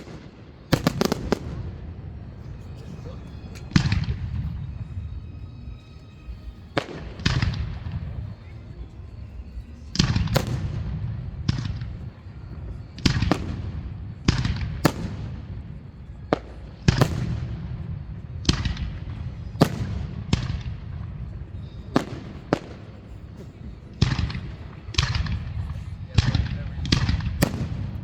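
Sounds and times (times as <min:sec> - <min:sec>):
fireworks bangs: 0:00.0 - 0:01.8.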